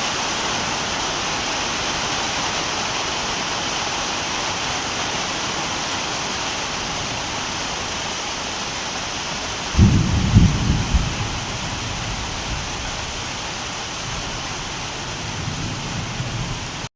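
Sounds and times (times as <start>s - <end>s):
heavy rain falling: 0.0s - 16.9s
thunder rumble: 9.7s - 16.9s.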